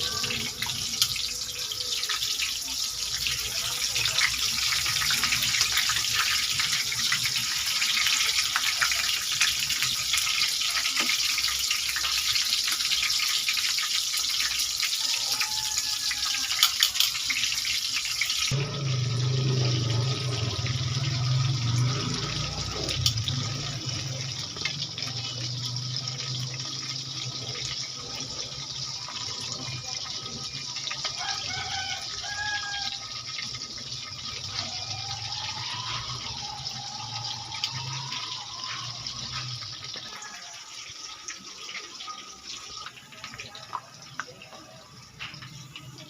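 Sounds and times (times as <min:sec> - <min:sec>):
food sizzling in hot oil: 0:00.0 - 0:46.0
low hum: 0:18.5 - 0:24.4.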